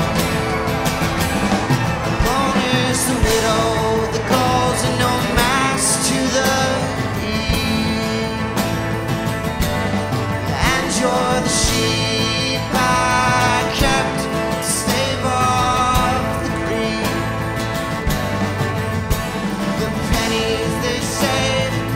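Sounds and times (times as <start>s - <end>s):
drum hits: 0.0s - 21.5s
live band playing: 0.0s - 21.9s.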